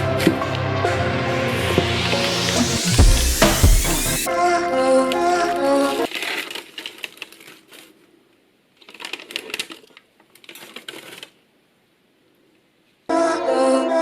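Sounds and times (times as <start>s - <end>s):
packaging clicking and rustling: 6.1s - 8.1s, 8.8s - 11.4s.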